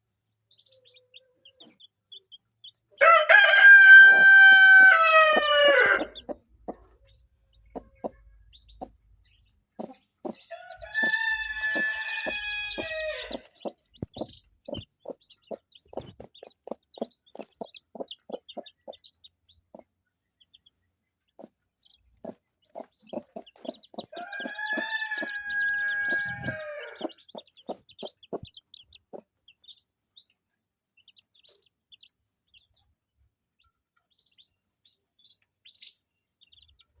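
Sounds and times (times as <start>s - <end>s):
chicks peeping: 0.2s - 32.9s, 33.5s - 37.0s
rooster crowing: 3.0s - 6.2s, 10.5s - 13.5s, 24.1s - 27.1s
chickens clucking: 3.0s - 9.0s, 9.7s - 19.9s, 21.4s - 29.3s.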